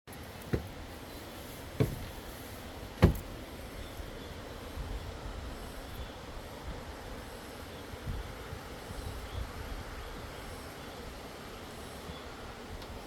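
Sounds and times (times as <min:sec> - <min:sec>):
dull thumps: 0:00.5 - 0:01.0, 0:01.7 - 0:03.5.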